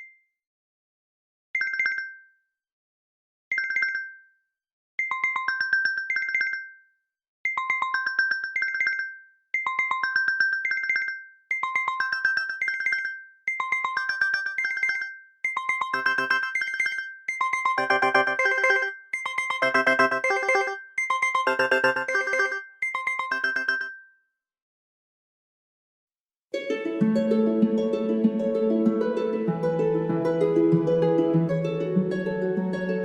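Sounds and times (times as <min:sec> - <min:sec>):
smartphone alarm tone: 0:15.9 - 0:17.0, 0:17.8 - 0:18.9, 0:19.6 - 0:24.0.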